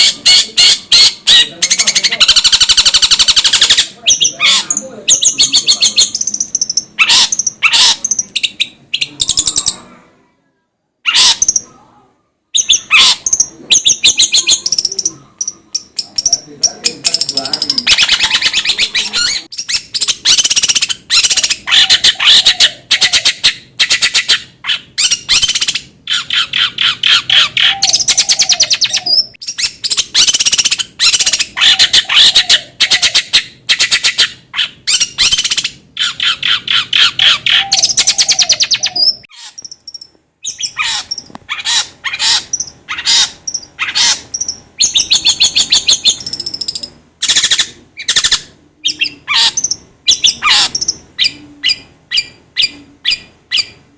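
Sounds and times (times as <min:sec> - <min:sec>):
bird harsh rattling chatter: 0:00.0 - 0:08.3, 0:12.7 - 0:19.5, 0:40.6 - 0:48.3.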